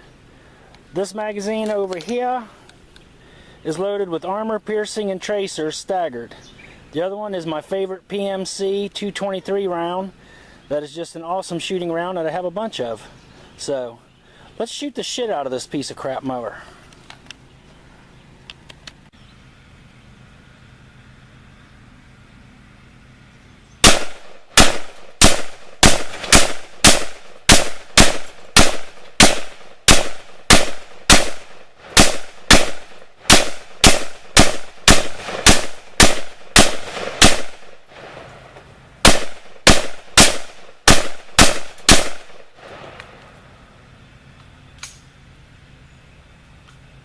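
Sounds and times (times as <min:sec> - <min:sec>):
rifle firing rapid shots: 0:23.8 - 0:38.2, 0:39.0 - 0:42.8.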